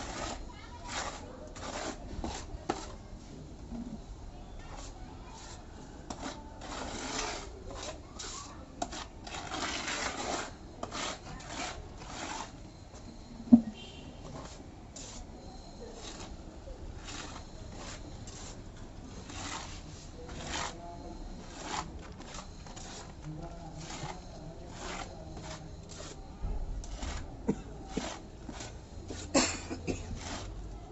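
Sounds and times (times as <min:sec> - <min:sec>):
putty blade scraping wall: 0:00.0 - 0:03.0, 0:06.1 - 0:12.6, 0:17.0 - 0:18.6, 0:19.2 - 0:20.8, 0:21.4 - 0:23.2, 0:23.8 - 0:26.2, 0:26.8 - 0:27.3, 0:27.9 - 0:29.3, 0:30.1 - 0:30.6.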